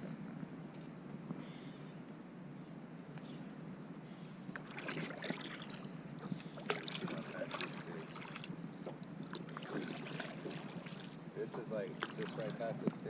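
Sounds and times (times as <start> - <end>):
boat engine humming: 4.6 - 13.0
water splashing against boat: 4.6 - 13.0.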